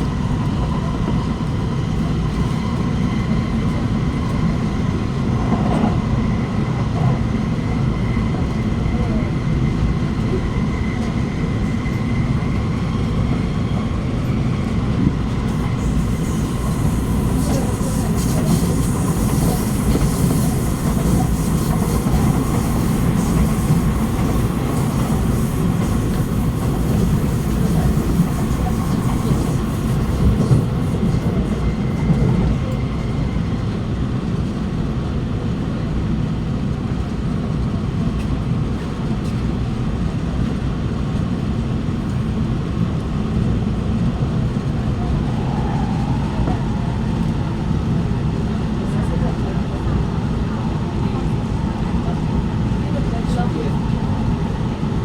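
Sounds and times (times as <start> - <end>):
train wheels rumbling on rail: 0.0 - 55.0
hiss: 15.5 - 32.0.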